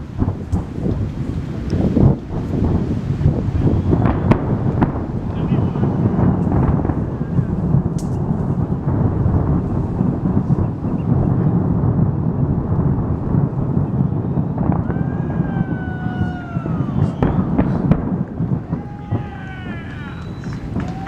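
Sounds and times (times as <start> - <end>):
falling firework whistles: 0.0 - 9.1, 13.3 - 21.0
fireworks barrage: 0.0 - 21.0
sharp firework cracks: 0.0 - 21.0.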